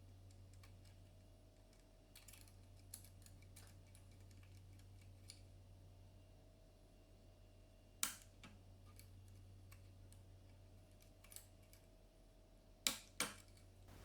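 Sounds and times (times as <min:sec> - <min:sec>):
small metallic clicks of lock picking: 0:00.3 - 0:05.4, 0:08.0 - 0:11.9, 0:12.8 - 0:13.7.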